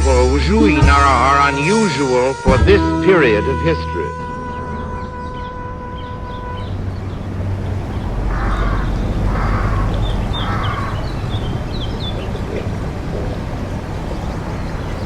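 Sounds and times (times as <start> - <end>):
bird harsh calls: 4.3 - 15.0
steady low rumble: 4.3 - 15.0.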